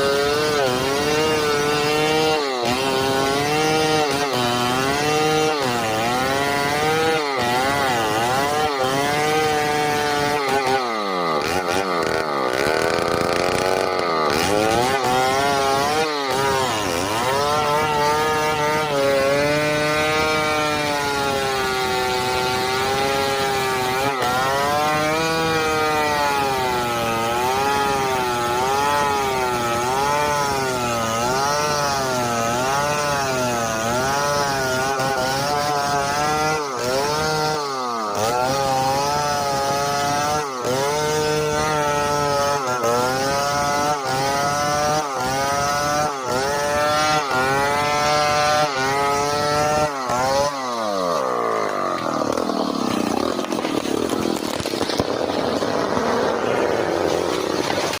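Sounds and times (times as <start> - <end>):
chainsaw cutting wood: 0.0 - 58.0.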